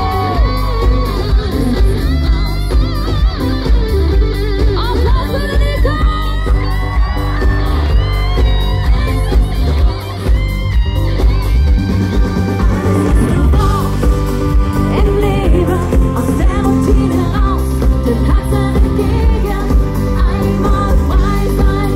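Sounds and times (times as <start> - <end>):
electric guitar: 0.0 - 21.9
person singing: 12.5 - 21.9.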